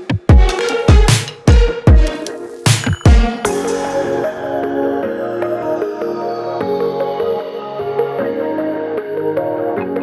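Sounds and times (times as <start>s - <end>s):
electronic music with heavy beat: 0.0s - 8.0s.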